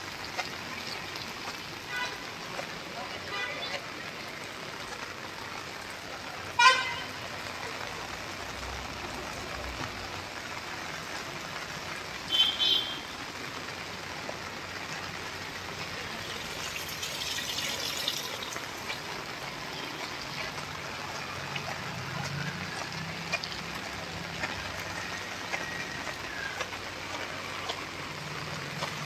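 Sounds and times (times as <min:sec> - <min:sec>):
rain falling: 0:00.0 - 0:29.0
vehicle horn toot: 0:06.6 - 0:07.1, 0:12.3 - 0:13.1.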